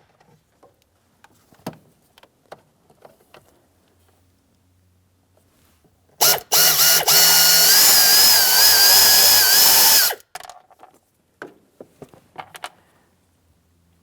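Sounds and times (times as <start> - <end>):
cordless drill motor whine: 6.2 - 10.2.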